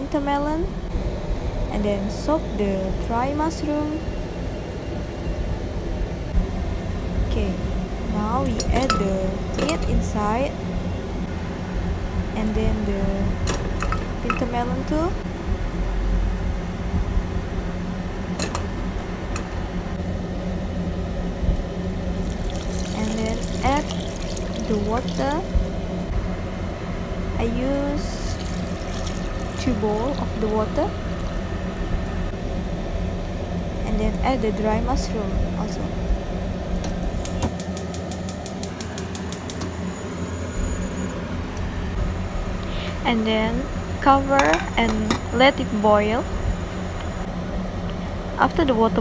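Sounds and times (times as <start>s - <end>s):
kitchen fan humming: 0.0s - 49.0s
gas stove igniter clicking: 36.8s - 39.7s.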